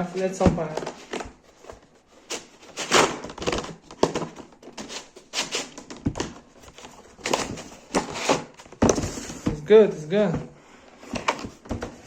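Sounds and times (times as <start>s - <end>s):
packaging rustling and crinkling: 0.0s - 9.6s.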